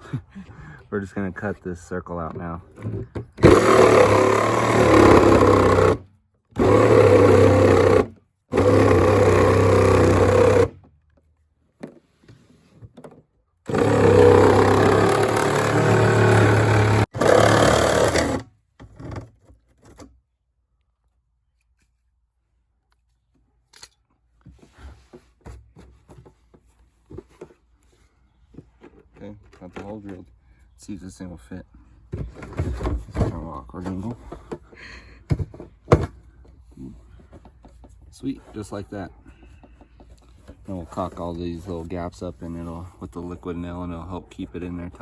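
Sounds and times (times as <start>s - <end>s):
reciprocating saw cutting plastic: 3.4s - 10.8s, 13.7s - 20.1s.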